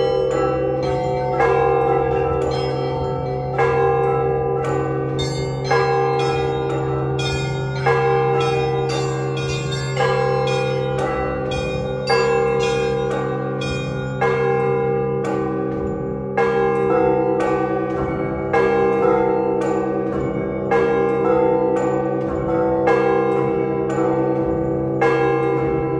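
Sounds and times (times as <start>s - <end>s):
heavy church bell struck: 0.0s - 25.9s
small bells chiming quickly: 4.7s - 14.6s.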